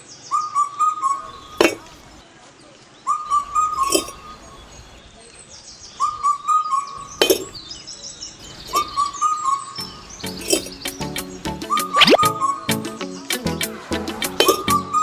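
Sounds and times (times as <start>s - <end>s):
high bird chirps: 5.6s - 15.0s.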